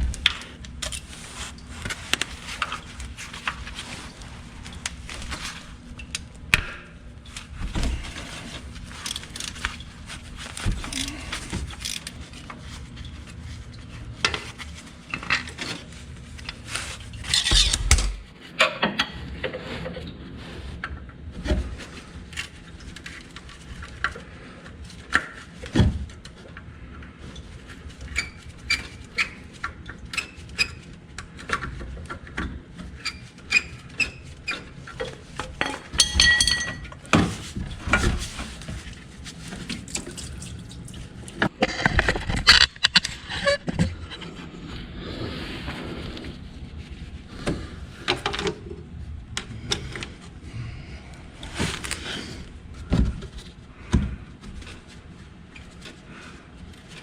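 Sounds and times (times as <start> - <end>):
hand tools clinking on metal: 35.6 - 36.9
ringing metal clink: 36.0 - 36.8.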